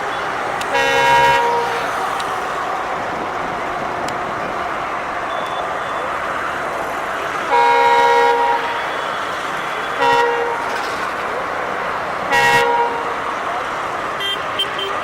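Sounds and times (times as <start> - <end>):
steady rushing noise: 0.0 - 14.5
locomotive horn blasts: 0.6 - 1.9, 7.4 - 10.8, 12.2 - 13.3, 14.2 - 15.0.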